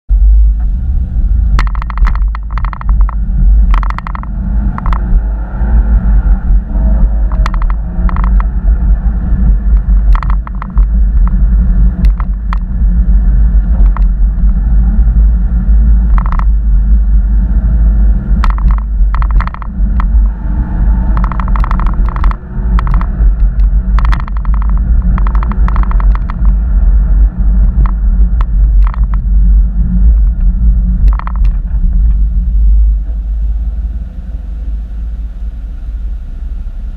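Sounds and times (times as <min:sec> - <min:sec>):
car engine: 0:00.1 - 0:36.9
low helicopter-like rumble: 0:00.1 - 0:36.9
ticking clicks: 0:01.5 - 0:17.0, 0:18.3 - 0:32.3.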